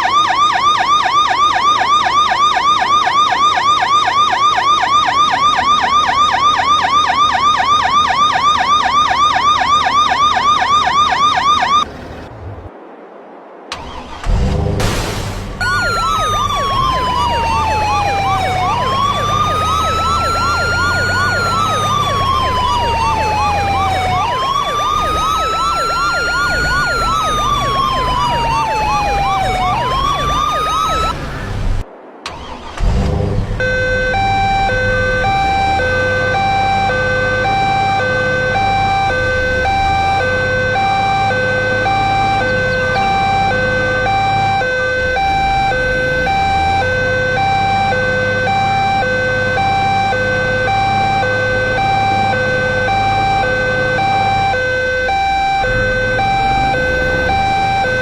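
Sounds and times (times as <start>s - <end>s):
truck engine running: 13.7s - 58.0s
siren tone over fast warble: 15.6s - 31.2s, 33.6s - 58.0s.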